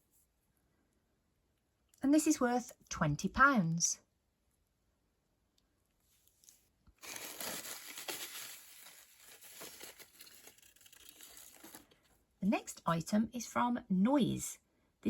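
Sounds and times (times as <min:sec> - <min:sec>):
packaging crinkling: 0:06.4 - 0:12.1.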